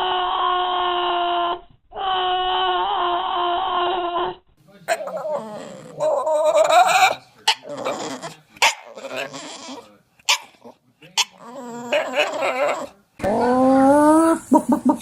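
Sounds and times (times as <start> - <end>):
dog crying: 0.0 - 15.0.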